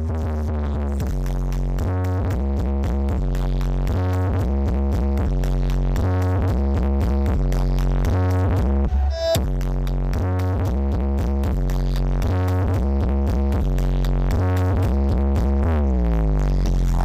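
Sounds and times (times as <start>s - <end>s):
electronic dance music: 0.0s - 17.0s
falling pitch sweep: 8.8s - 9.4s.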